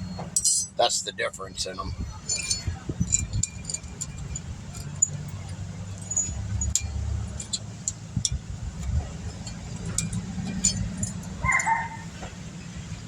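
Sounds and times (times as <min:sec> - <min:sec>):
low background rumble: 0:00.0 - 0:13.0
metal clips clicking: 0:02.3 - 0:12.1.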